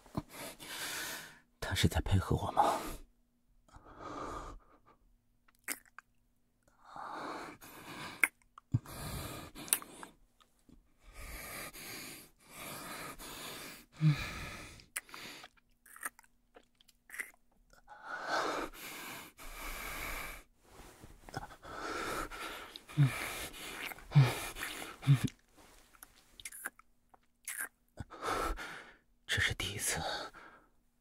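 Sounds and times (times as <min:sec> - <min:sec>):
mouth clicks: 0:05.5 - 0:06.1.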